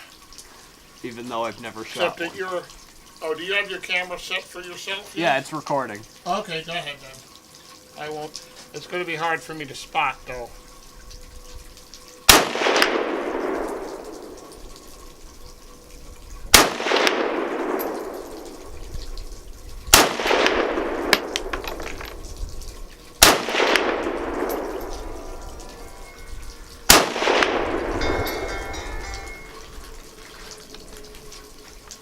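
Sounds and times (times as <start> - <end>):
gunshots with long echo: 12.3 - 14.5, 16.5 - 18.7, 19.9 - 22.1, 23.2 - 25.4, 26.9 - 28.4.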